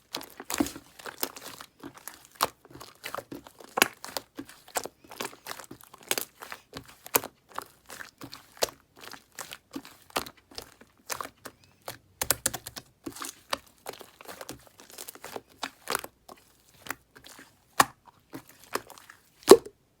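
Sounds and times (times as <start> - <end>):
slime crackling pops: 19.5 - 19.7.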